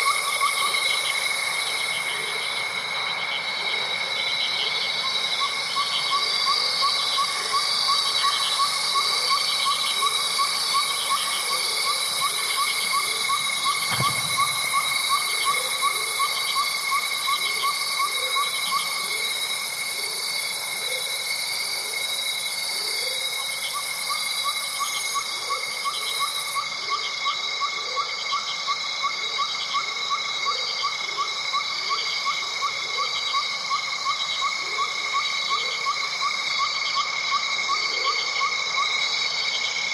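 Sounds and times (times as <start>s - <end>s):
high-pitched insect chorus: 0.0s - 39.9s
soft low thump: 13.8s - 14.9s.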